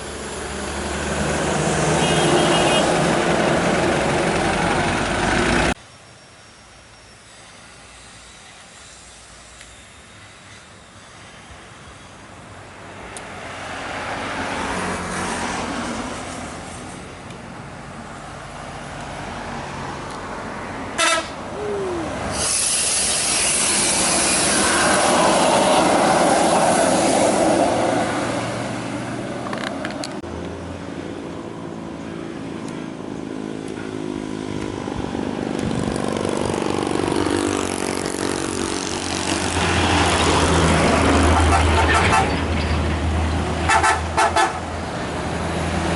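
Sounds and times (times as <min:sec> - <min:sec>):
buses passing with diesel engines: 0:00.0 - 0:45.9
loud hiss: 0:21.6 - 0:26.0.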